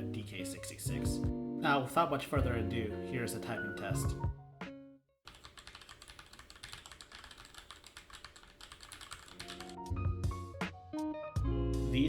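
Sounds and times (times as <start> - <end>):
typing on mechanical keyboard: 5.3 - 9.8.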